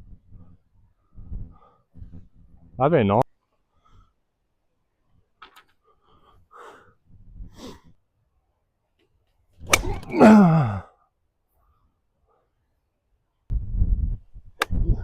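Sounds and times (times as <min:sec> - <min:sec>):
man groaning: 0:09.9 - 0:11.0.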